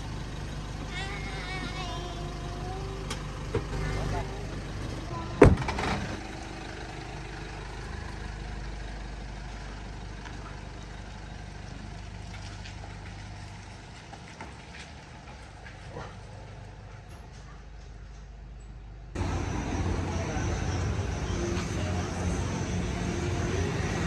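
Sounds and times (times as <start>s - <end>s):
vehicle engine droning: 0.0s - 24.0s
sharp thump: 5.4s - 6.2s.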